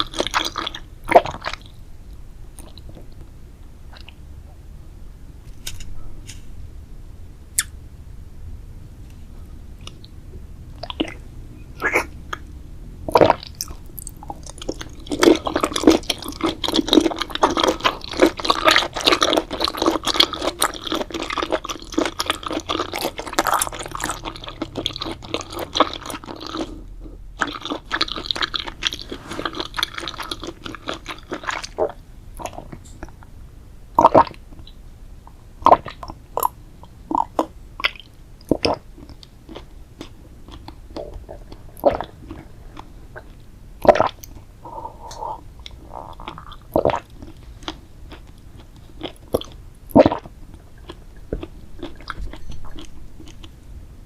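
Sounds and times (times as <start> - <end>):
crisp chewing crunches: 13.1 - 33.1, 45.6 - 53.6
wet squishy chewing: 13.1 - 33.3, 35.6 - 44.5, 45.1 - 53.5.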